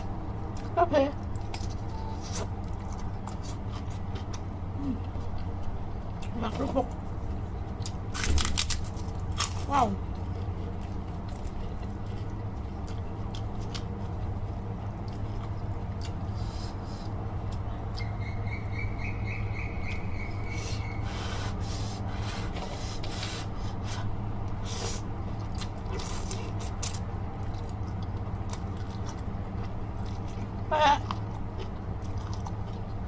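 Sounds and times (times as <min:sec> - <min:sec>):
chewing and mouth clicks: 0:00.0 - 0:06.4, 0:08.6 - 0:18.2, 0:25.2 - 0:33.0
low steady hum: 0:00.0 - 0:33.0
cracker crunches: 0:07.7 - 0:14.0, 0:25.4 - 0:33.0.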